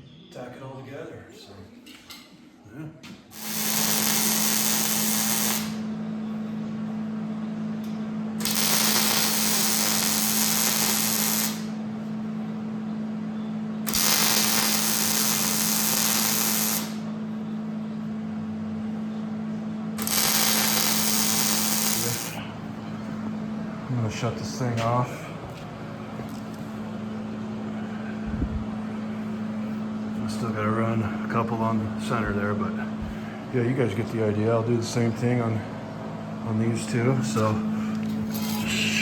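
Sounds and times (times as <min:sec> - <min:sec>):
arc welding crackle: 0:03.3 - 0:06.0, 0:08.4 - 0:11.9, 0:13.8 - 0:17.2, 0:20.0 - 0:22.5, 0:37.2 - 0:39.0.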